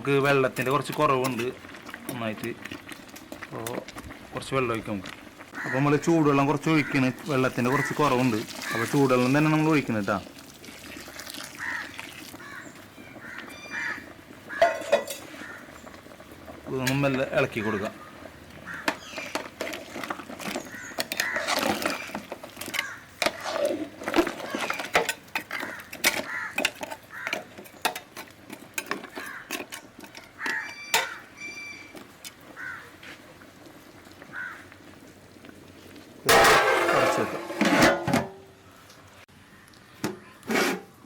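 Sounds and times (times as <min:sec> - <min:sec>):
curry simmering: 0:00.0 - 0:37.6
spoon clinking and scraping pot: 0:14.6 - 0:15.4, 0:18.9 - 0:32.4.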